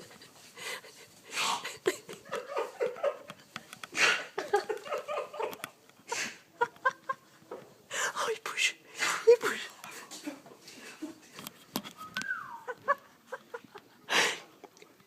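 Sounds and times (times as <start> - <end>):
breathy laughter: 0.0 - 7.4, 12.4 - 14.8.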